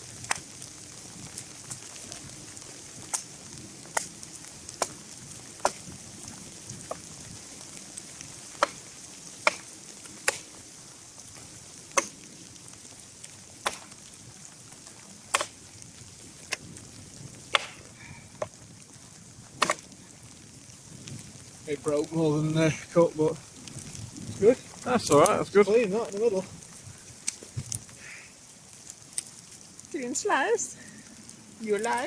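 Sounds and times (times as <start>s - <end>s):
steady hiss: 0.0s - 32.0s
blade chopping wood: 4.8s - 5.0s, 5.6s - 5.8s, 8.6s - 8.8s, 9.4s - 10.6s, 11.9s - 12.2s, 13.6s - 14.0s, 15.3s - 15.6s, 17.5s - 18.5s, 19.6s - 19.9s.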